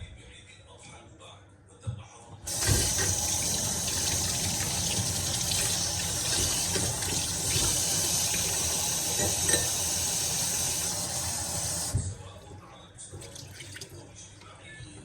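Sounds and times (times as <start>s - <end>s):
running water rushing: 2.5s - 12.1s.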